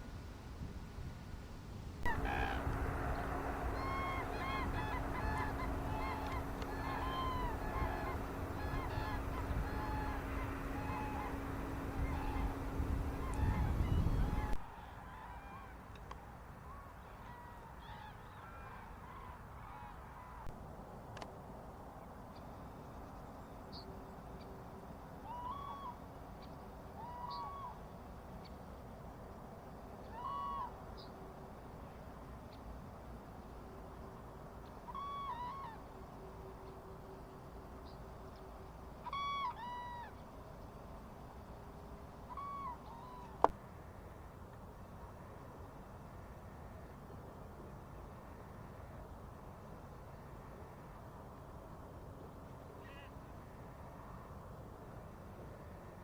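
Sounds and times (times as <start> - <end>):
steady low hum: 1.1 - 14.6
bird hooting call: 2.1 - 14.6, 25.2 - 26.0, 34.9 - 35.9, 39.0 - 40.2, 42.3 - 43.6
geese honking: 2.1 - 14.6.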